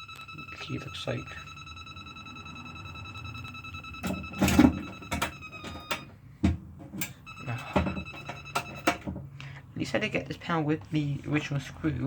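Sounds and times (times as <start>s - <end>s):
high electronic tone: 0.0s - 6.1s
clicks and knocks handling alarm panel: 4.0s - 9.3s.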